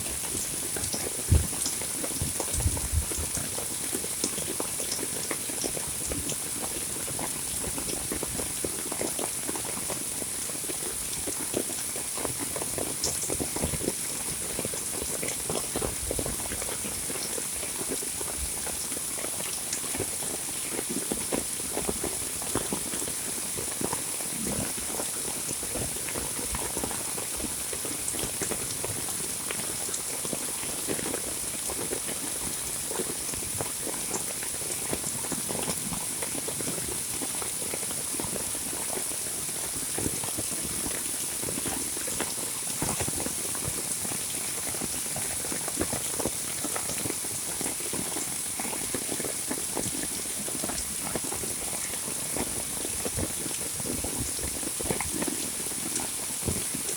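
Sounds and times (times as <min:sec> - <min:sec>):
heavy rain: 0:00.0 - 0:23.2.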